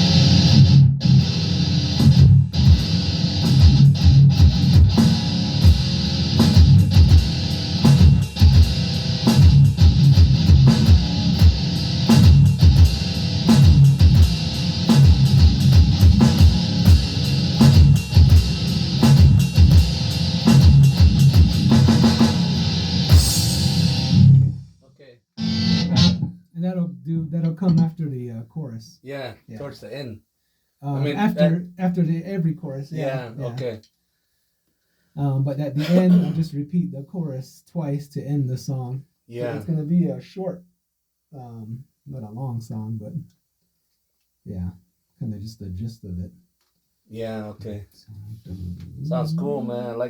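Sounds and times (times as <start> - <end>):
electric guitar rock riff: 0.0 - 24.6, 25.4 - 26.3.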